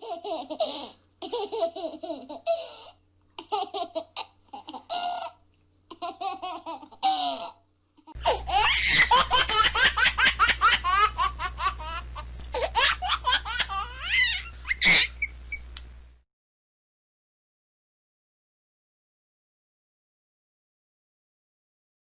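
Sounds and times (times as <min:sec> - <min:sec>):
young children laughing: 0:00.0 - 0:15.3.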